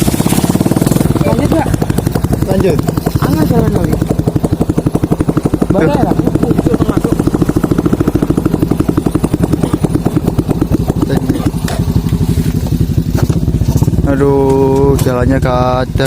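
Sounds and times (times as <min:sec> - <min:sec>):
motorcycle engine running: 0:00.0 - 0:16.0
knocks from rough road: 0:09.5 - 0:15.2.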